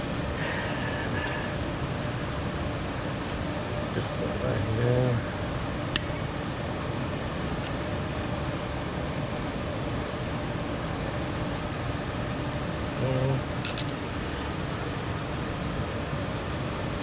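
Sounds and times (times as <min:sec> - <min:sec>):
steady background hum: 0:00.0 - 0:17.0
metal hardware clicking: 0:13.7 - 0:14.0.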